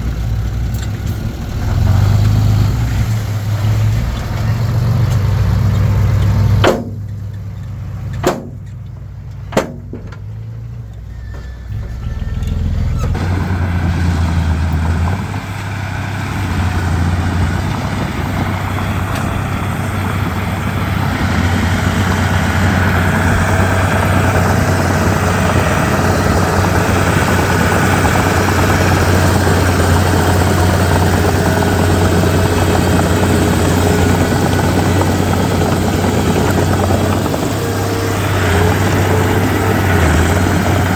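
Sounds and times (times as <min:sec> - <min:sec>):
bulldozer diesel engine: 0:00.0 - 0:40.9
sharp knocks: 0:06.6 - 0:07.2, 0:08.2 - 0:08.8, 0:09.5 - 0:10.3.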